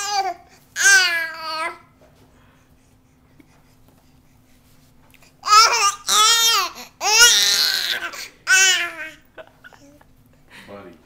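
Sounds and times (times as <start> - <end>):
baby high-pitched calls: 5.4 - 9.2.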